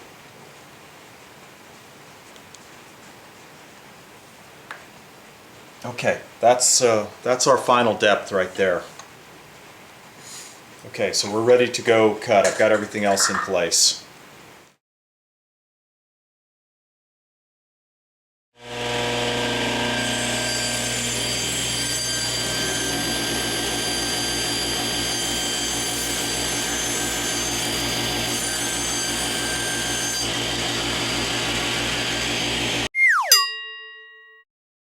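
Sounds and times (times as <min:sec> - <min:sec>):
router plunge-cutting wood: 0:18.6 - 0:32.9
falling electronic tone: 0:33.0 - 0:33.4.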